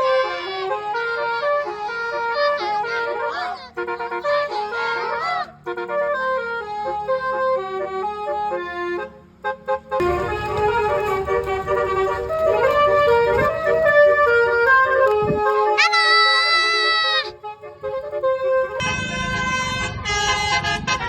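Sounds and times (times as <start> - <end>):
musical bus horn melody: 0.0 - 21.0
low rumble: 18.8 - 21.0.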